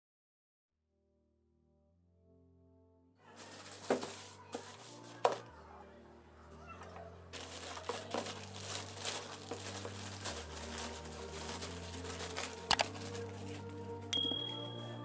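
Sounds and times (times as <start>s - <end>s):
packaging crinkling and rustling: 3.4s - 5.5s, 7.3s - 13.8s.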